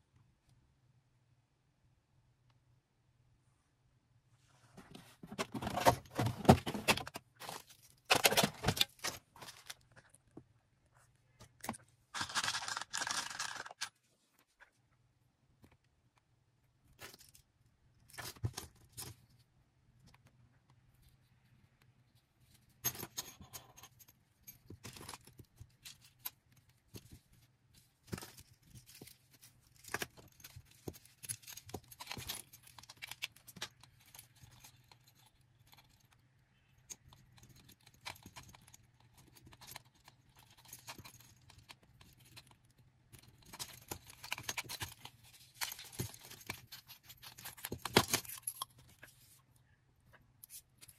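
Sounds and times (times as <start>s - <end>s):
packaging rustling and scraping: 4.6s - 10.0s, 12.2s - 14.0s.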